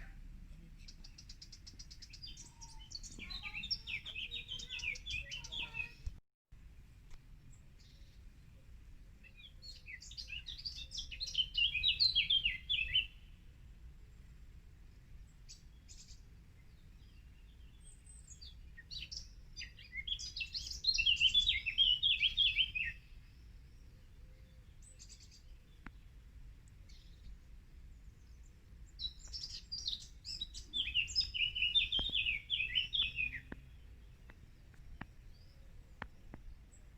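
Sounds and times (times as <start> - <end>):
low steady background rumble: 0.0 - 2.0, 6.5 - 9.8, 23.0 - 36.9
songbird singing: 0.0 - 6.2, 6.8 - 36.9
short bird chirps: 29.0 - 33.9.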